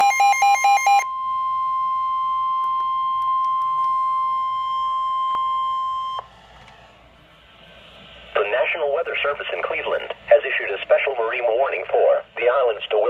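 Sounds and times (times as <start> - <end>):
steady warning alarm tone: 0.0 - 6.4.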